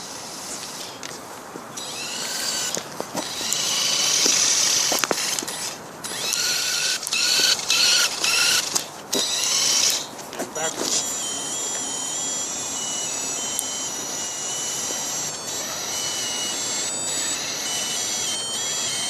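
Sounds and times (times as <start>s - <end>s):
small electric motors whining: 0.0s - 19.0s
sharp clicks: 0.5s - 19.0s.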